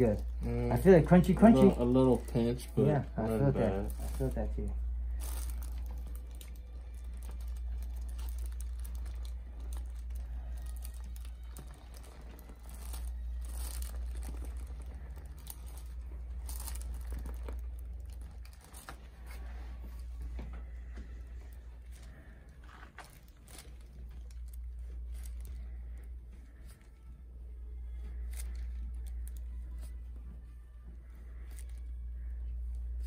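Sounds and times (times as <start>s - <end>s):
rustling and crinkling: 0.0s - 33.0s
steady low hum: 0.0s - 33.0s.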